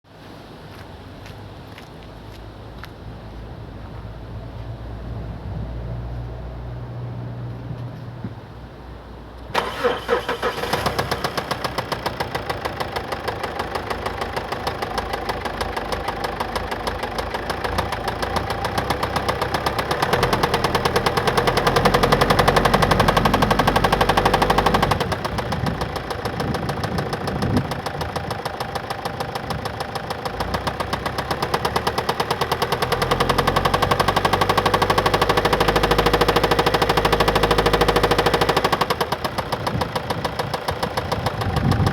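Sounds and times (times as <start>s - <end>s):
diesel engine running: 3.2s - 41.9s
rapid engine knocking: 9.6s - 41.9s.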